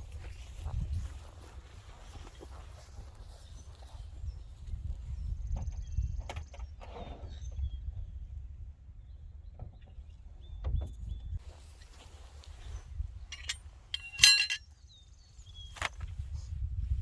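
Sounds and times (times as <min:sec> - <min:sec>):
faint metal clicks: 0:13.3 - 0:14.6
sharp metallic clank: 0:13.4 - 0:14.6.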